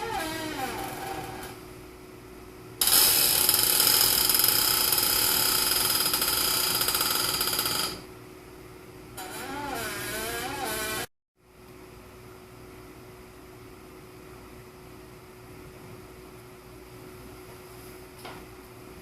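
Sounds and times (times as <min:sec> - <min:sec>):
chair squeaking: 0:00.0 - 0:01.6, 0:02.8 - 0:08.0, 0:09.2 - 0:11.1.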